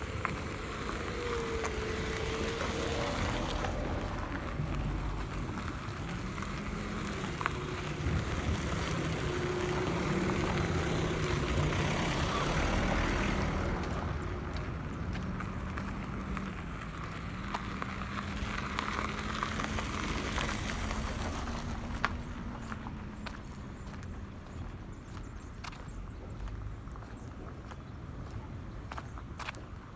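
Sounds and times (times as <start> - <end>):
vehicle engine running: 0.0 - 29.0
road and wind noise: 0.0 - 29.9.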